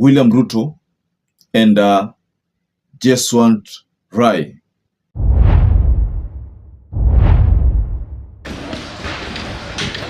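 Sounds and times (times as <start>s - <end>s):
booming hit sound effect: 5.2s - 8.5s.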